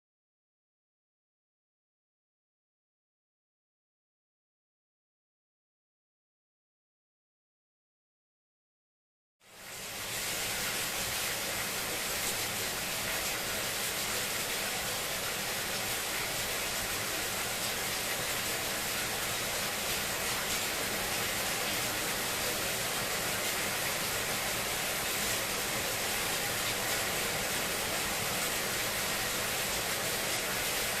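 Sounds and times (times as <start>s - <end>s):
steady rain: 9.4s - 31.0s.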